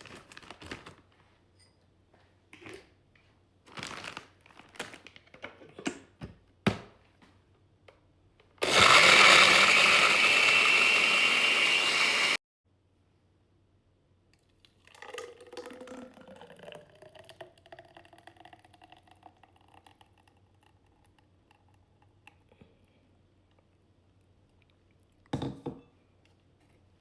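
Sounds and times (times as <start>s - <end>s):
liquid pouring into container: 14.6s - 21.9s.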